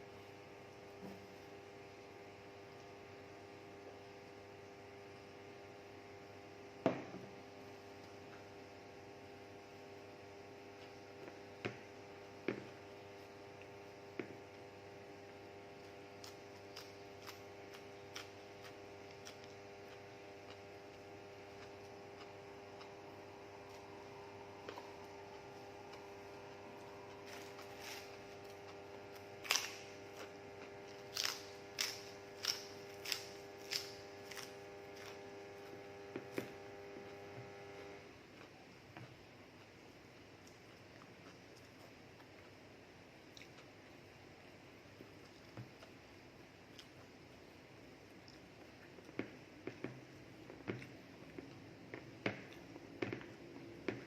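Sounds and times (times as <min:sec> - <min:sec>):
electrical hum: 0:00.0 - 0:54.0
crunchy chewing: 0:15.2 - 0:44.0, 0:46.6 - 0:47.2.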